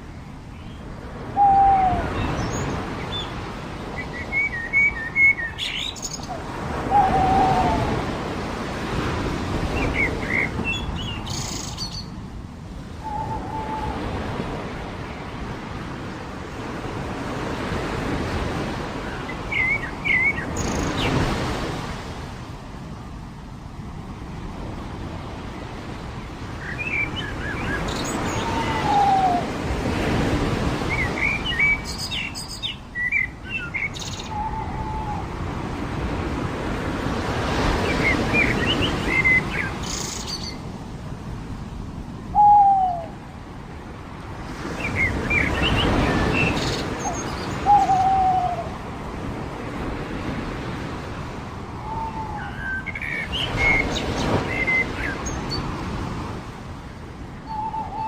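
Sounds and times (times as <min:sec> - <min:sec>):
waves washing onto beach: 0:00.0 - 0:58.0
descending bird calls: 0:26.7 - 0:29.5, 0:44.8 - 0:48.8.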